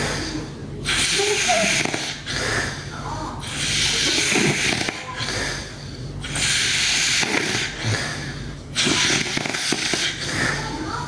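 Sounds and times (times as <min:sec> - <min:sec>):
girl snoring: 0:00.0 - 0:10.9.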